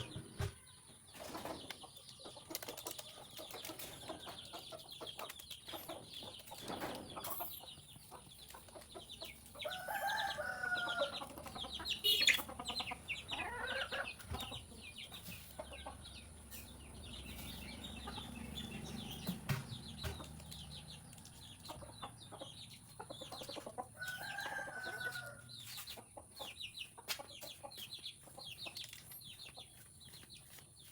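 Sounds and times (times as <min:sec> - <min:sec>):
beak and claw clicks and scrapes: 0:01.2 - 0:11.7.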